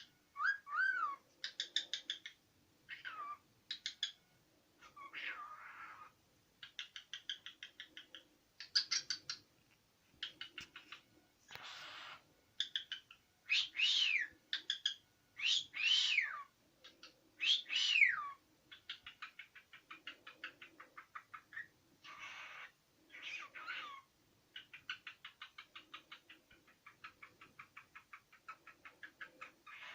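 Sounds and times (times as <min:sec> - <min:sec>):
cockatiel chirping: 0:00.0 - 0:04.2, 0:04.8 - 0:09.4, 0:10.2 - 0:29.9
cockatiel hissy call: 0:04.8 - 0:06.1, 0:11.5 - 0:12.2, 0:22.0 - 0:24.1, 0:29.6 - 0:29.9.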